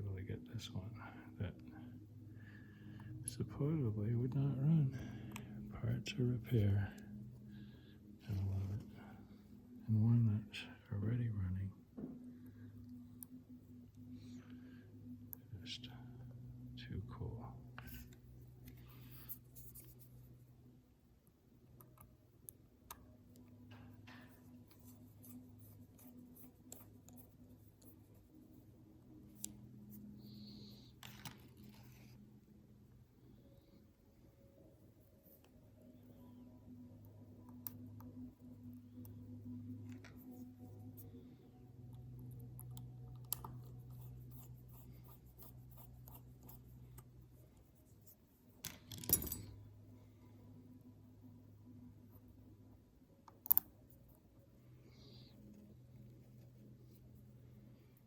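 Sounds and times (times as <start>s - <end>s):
steady low hum: 0.0s - 58.0s
small objects clicking and scratching: 31.0s - 32.1s.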